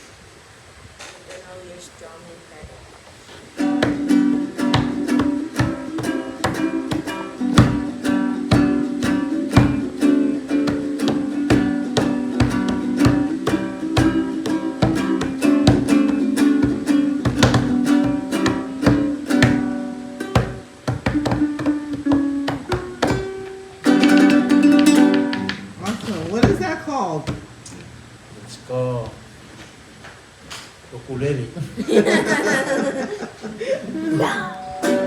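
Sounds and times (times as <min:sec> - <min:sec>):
ukulele strumming: 0:03.5 - 0:27.6, 0:34.0 - 0:35.0.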